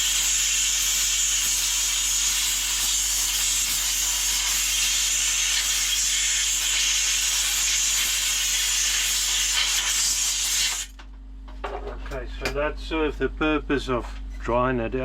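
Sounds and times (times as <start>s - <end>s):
compressed air hissing: 0.0s - 10.9s.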